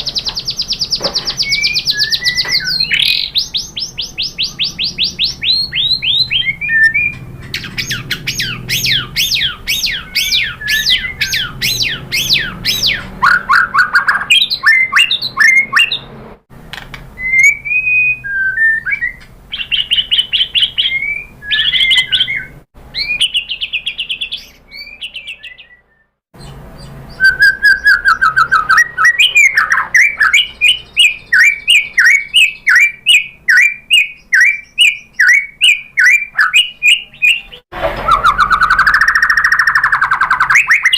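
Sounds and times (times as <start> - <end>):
bird singing whistled notes: 0.0 - 16.1, 17.2 - 40.9.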